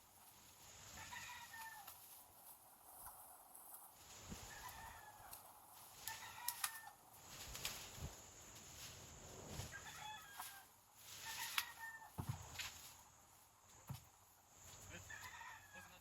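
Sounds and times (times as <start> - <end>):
faint fowl calls: 0.8 - 2.2, 4.3 - 7.0, 9.5 - 12.4, 14.6 - 16.0.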